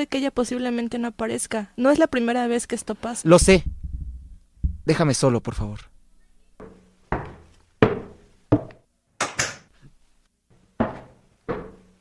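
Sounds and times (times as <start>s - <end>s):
faint low hum: 0.0s - 6.6s
footsteps on wooden floor: 3.4s - 5.9s.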